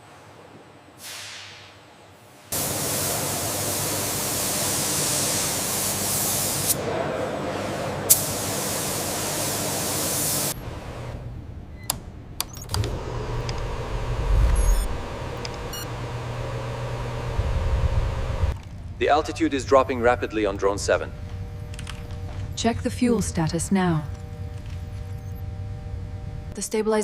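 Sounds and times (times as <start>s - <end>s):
hiss of rushing air or spray: 1.0s - 6.8s, 8.1s - 10.6s
low rumble: 12.8s - 20.3s.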